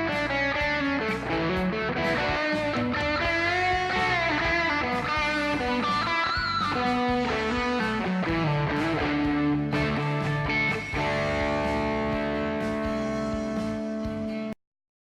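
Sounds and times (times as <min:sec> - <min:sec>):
electric guitar lead with bends: 0:00.0 - 0:14.6.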